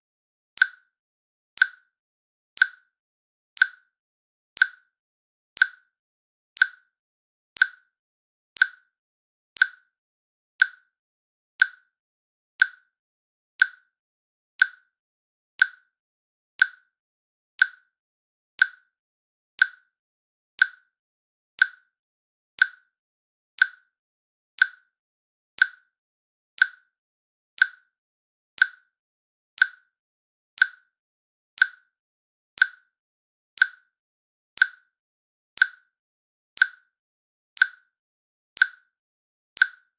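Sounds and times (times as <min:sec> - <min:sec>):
timer clicks ticking: 0:00.6 - 0:00.9, 0:01.6 - 0:01.9, 0:02.6 - 0:02.9, 0:03.6 - 0:03.9, 0:04.6 - 0:04.9, 0:05.6 - 0:06.0, 0:06.6 - 0:07.0, 0:07.6 - 0:08.0, 0:08.6 - 0:09.0, 0:09.6 - 0:09.9, 0:10.6 - 0:11.0, 0:11.6 - 0:12.0, 0:12.6 - 0:13.0, 0:13.6 - 0:13.9, 0:14.6 - 0:15.0, 0:15.6 - 0:16.0, 0:16.6 - 0:16.9, 0:17.6 - 0:17.9, 0:18.6 - 0:19.0, 0:19.6 - 0:20.0, 0:20.6 - 0:21.0, 0:21.6 - 0:22.0, 0:22.6 - 0:23.0, 0:23.6 - 0:24.0, 0:24.6 - 0:25.0, 0:25.6 - 0:26.0, 0:26.6 - 0:27.0, 0:27.6 - 0:28.0, 0:28.6 - 0:29.0, 0:29.6 - 0:30.0, 0:30.6 - 0:31.0, 0:31.6 - 0:32.0, 0:32.6 - 0:33.0, 0:33.6 - 0:34.0, 0:34.6 - 0:35.0, 0:35.6 - 0:36.0, 0:36.6 - 0:37.0, 0:37.6 - 0:38.0, 0:38.6 - 0:39.0, 0:39.6 - 0:39.9.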